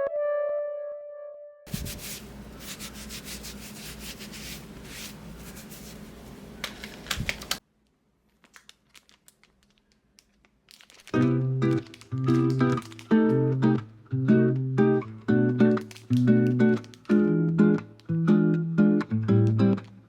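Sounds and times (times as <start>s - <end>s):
rubbing and crinkling with clicks: 1.7s - 13.9s, 15.3s - 18.2s.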